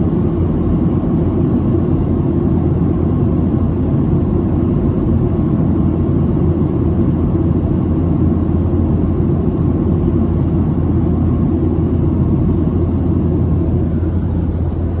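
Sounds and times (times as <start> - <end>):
jet engines rumbling in cabin: 0.0 - 15.0.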